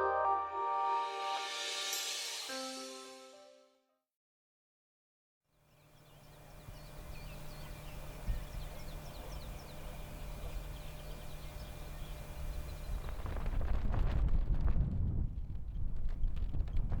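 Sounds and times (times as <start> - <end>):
birds chirping: 5.7 - 13.4.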